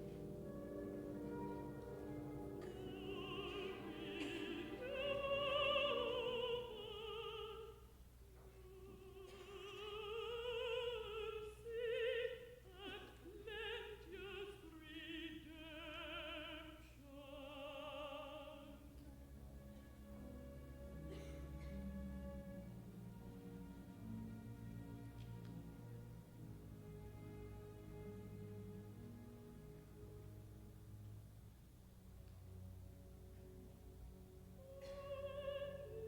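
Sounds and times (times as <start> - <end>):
soft orchestral accompaniment: 0.0 - 36.0
contralto singing with vibrato: 2.1 - 7.9, 8.5 - 18.9, 34.6 - 36.0.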